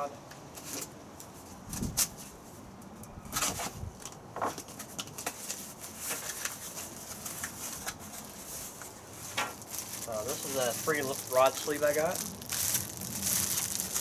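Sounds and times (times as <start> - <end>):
box contents rustling: 4.4 - 14.0.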